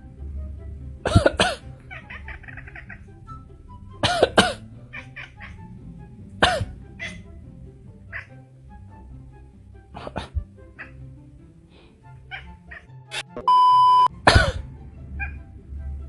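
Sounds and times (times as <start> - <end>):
soft background music: 0.0 - 16.0
person coughing: 1.0 - 1.6, 4.0 - 4.6, 6.4 - 6.8, 10.0 - 10.4, 14.2 - 14.7
cat imitating a cough: 1.0 - 2.9, 4.0 - 5.5, 6.4 - 7.2, 10.0 - 11.0, 14.2 - 15.4.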